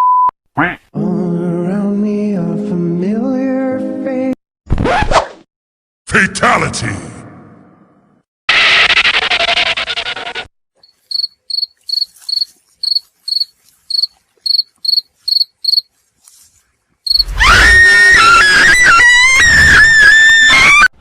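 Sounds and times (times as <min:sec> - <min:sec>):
cricket chirping: 0:10.8 - 0:15.9, 0:17.1 - 0:17.3.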